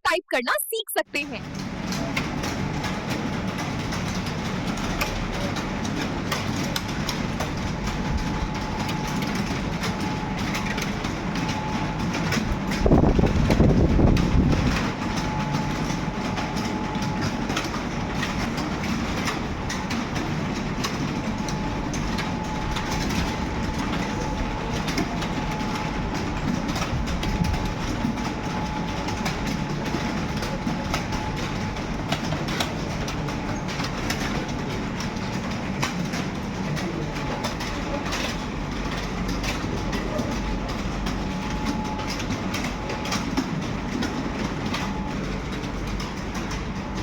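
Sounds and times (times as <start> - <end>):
keyboards typing clatter: 1.2 - 47.0.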